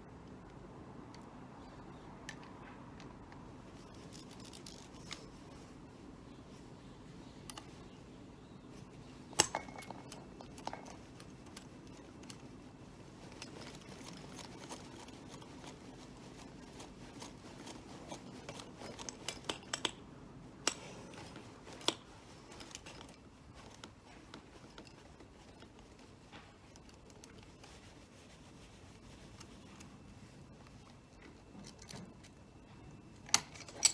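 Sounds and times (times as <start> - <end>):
tool clicks and metallic clinks: 3.8 - 5.6, 9.3 - 12.5, 13.2 - 20.0, 20.6 - 25.7, 33.2 - 33.9.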